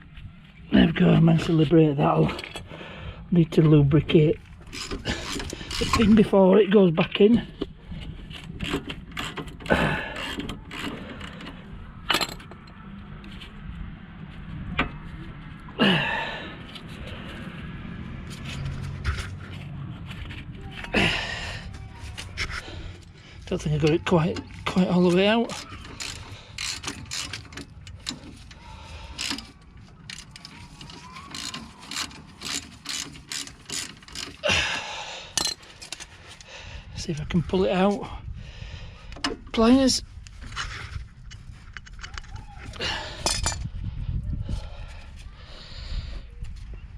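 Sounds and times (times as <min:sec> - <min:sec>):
metal tools clinking and scraping: 0:04.7 - 0:06.3, 0:08.3 - 0:12.8, 0:18.3 - 0:34.4, 0:35.3 - 0:36.5, 0:43.0 - 0:43.7.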